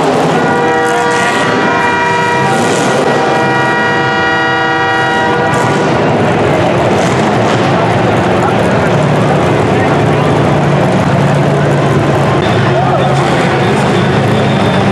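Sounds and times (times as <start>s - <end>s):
horn blast: 0.0s - 7.8s
rough car engines: 0.0s - 14.9s.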